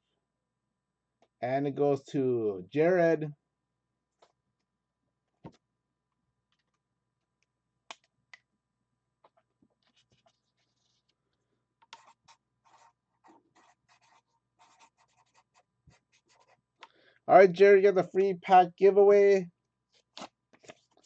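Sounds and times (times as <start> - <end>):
light scratching: 9.8 - 11.2, 12.0 - 16.6.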